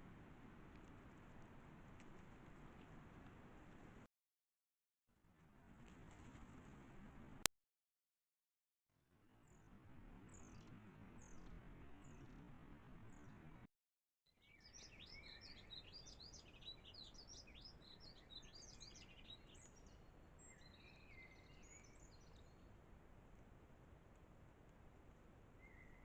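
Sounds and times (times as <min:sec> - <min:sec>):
faint outdoor background noise: 0:00.0 - 0:04.1, 0:05.2 - 0:07.5, 0:09.0 - 0:13.7, 0:14.3 - 0:26.0
songbirds singing: 0:09.4 - 0:13.6, 0:14.3 - 0:22.7, 0:25.5 - 0:26.0.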